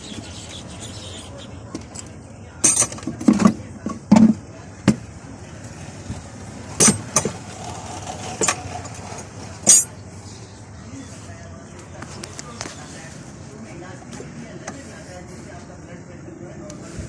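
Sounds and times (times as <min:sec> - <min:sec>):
metal tools clanking on engine: 0:01.7 - 0:04.4, 0:06.7 - 0:10.1.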